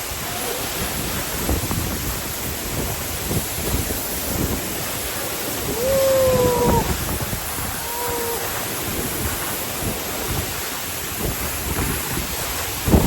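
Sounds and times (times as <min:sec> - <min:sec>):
waterfall rushing: 0:00.0 - 0:13.0
wind buffeting microphone: 0:00.0 - 0:13.0.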